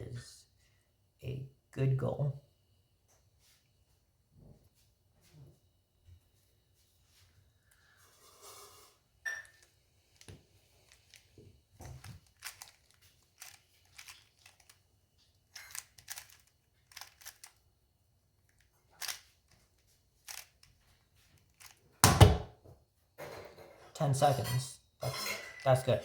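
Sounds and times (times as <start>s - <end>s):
puzzle cube layers clicking: 11.9s - 14.8s, 15.6s - 17.6s, 19.0s - 19.3s, 20.3s - 20.6s.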